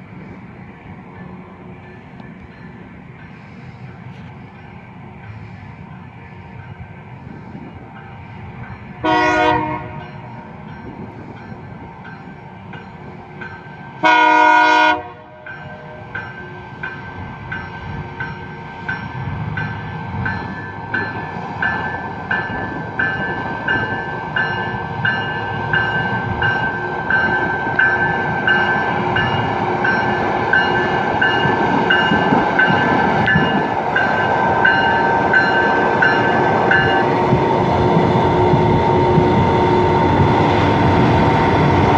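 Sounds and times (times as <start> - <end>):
train rumbling: 0.0 - 41.9
train air horn blasts: 9.0 - 10.4, 14.0 - 16.1.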